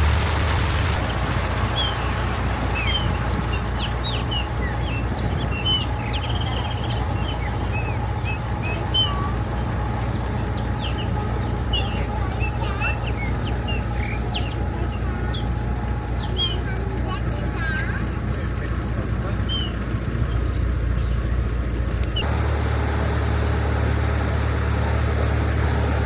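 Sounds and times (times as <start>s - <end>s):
boat engine humming: 0.0s - 26.0s.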